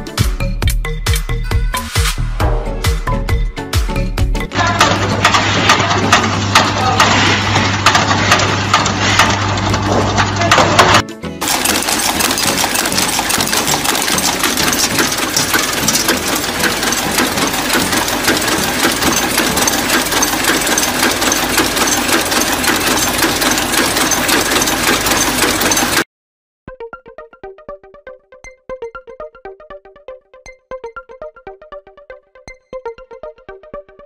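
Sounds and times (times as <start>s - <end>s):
machine clattering with rapid ticks: 4.7s - 26.0s.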